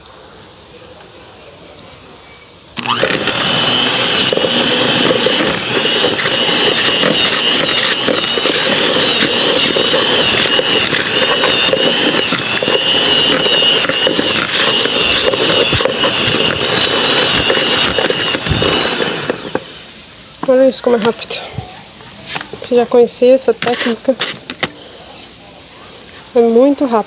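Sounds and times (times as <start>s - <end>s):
electric mixer motor running: 2.8s - 21.4s.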